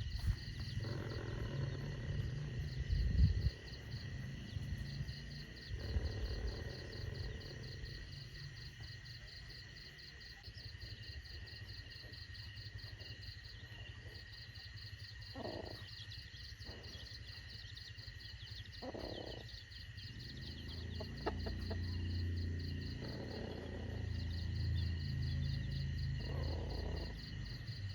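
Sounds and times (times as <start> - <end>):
insects chirping: 0.0 - 27.9
chickens clucking: 20.8 - 22.1.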